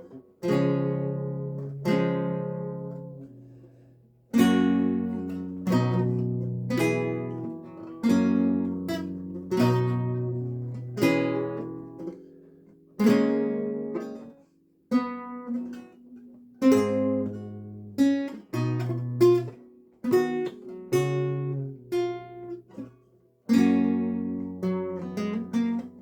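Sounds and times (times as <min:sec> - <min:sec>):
solo lute playing: 0:00.0 - 0:26.0.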